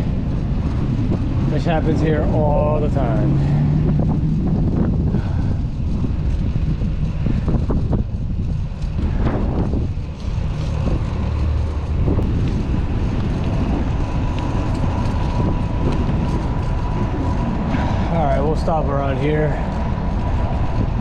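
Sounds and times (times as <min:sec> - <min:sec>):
road traffic: 0:00.0 - 0:21.0
wind buffeting microphone: 0:00.0 - 0:21.0.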